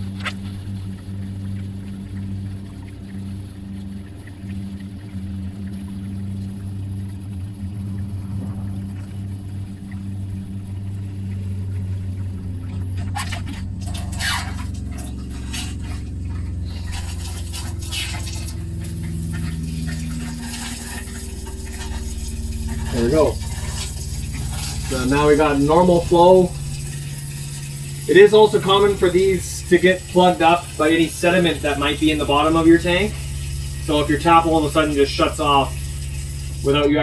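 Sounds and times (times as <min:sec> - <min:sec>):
water pump humming: 0:00.0 - 0:37.0
water tap running: 0:08.8 - 0:37.0
tap spitting and sputtering: 0:12.6 - 0:37.0.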